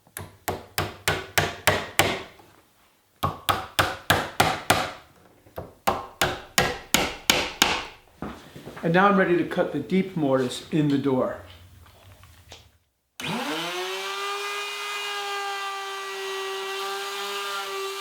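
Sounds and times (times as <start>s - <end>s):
hammer tapping nails into wood: 0.2s - 2.2s, 3.2s - 5.0s, 5.6s - 8.0s.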